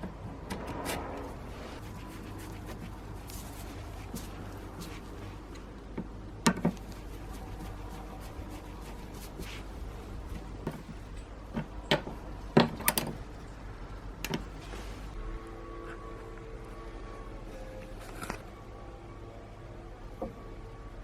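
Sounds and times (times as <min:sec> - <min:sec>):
low hum: 0:00.0 - 0:12.6, 0:13.2 - 0:21.0.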